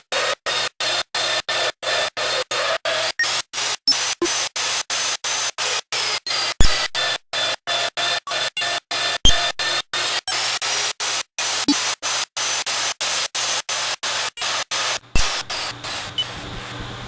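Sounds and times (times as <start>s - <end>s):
sharp clicks: 15.2s - 15.6s
magnetic drill hissing: 15.2s - 16.8s.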